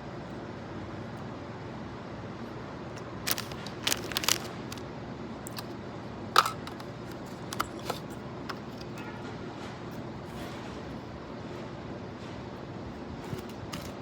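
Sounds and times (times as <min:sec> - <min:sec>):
steady background hum: 0:00.0 - 0:14.0
snack packaging clicks and taps: 0:03.0 - 0:04.8.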